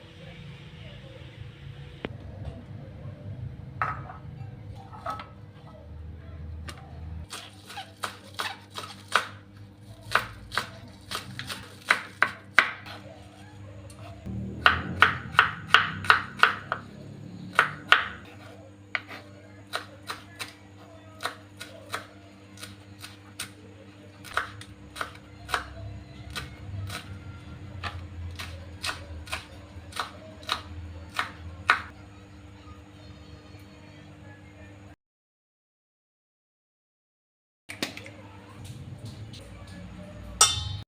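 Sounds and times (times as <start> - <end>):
knife chopping on cutting board: 14.6 - 16.8, 17.5 - 20.5.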